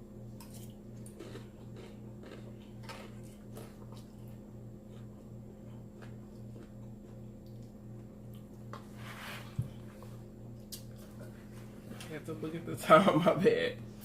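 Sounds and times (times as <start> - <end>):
low steady hum: 0.0 - 14.0
chewing crunchy salad: 0.3 - 8.8, 10.0 - 12.0.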